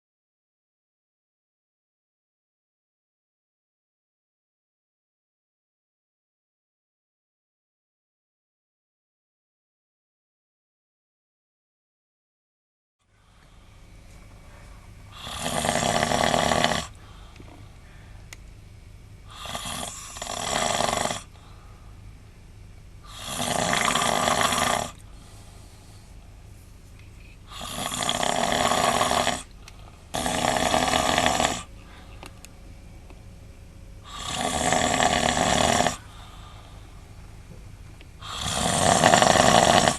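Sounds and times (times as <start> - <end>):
low steady hum: 13.0 - 39.9
man snoring loudly: 15.1 - 17.0, 19.3 - 21.4, 23.1 - 25.0, 27.5 - 29.5, 30.1 - 31.7, 34.0 - 36.5, 38.2 - 39.9.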